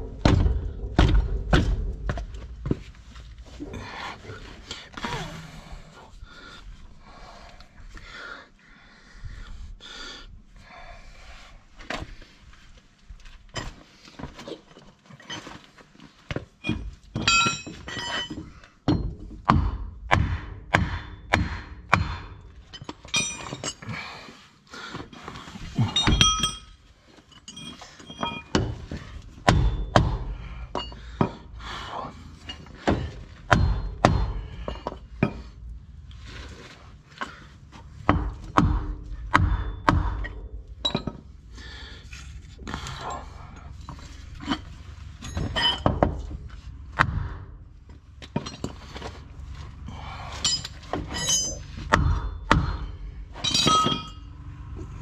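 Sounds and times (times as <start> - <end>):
metal knocks and thuds: 0.0 - 5.1, 16.3 - 23.8, 25.8 - 26.8, 27.5 - 31.6, 32.4 - 35.7, 37.3 - 41.4, 43.4 - 49.4, 50.4 - 54.8
short metal clinks: 25.9 - 28.6, 50.4 - 51.7, 53.4 - 54.5.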